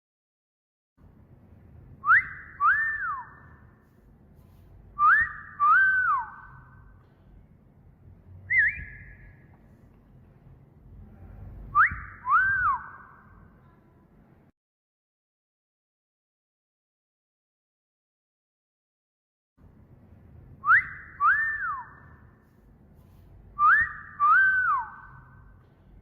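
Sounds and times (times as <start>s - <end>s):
wolf whistle: 2.0s - 3.6s, 5.0s - 6.9s, 8.5s - 9.4s, 11.7s - 13.3s, 20.6s - 22.2s, 23.6s - 25.5s.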